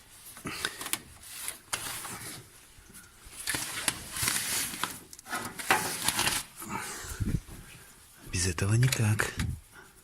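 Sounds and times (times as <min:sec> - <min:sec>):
cable scraping and rustling: 0:00.0 - 0:08.2.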